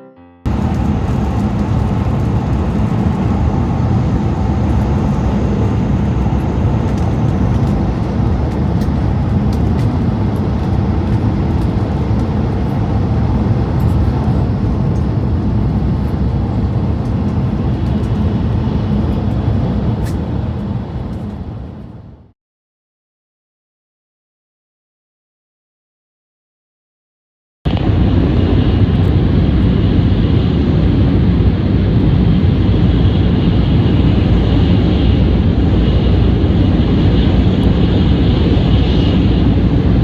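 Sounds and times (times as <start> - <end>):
train running rumble: 0.5 - 22.2.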